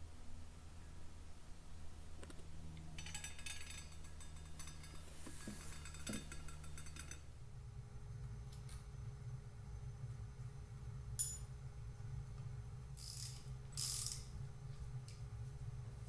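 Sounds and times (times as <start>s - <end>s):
small metal parts clinking: 2.9s - 7.3s.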